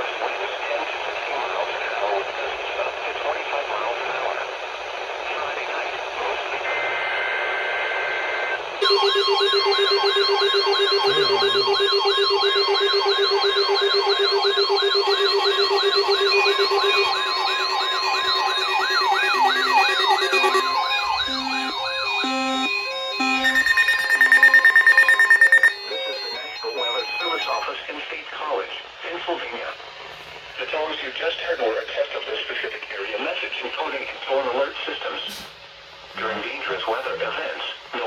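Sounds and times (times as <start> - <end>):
electronic siren tones: 8.8 - 27.6
rapidly pulsing tone: 8.8 - 27.6
short repeated beeps: 8.8 - 27.6
wailing siren sweeps: 8.8 - 27.6.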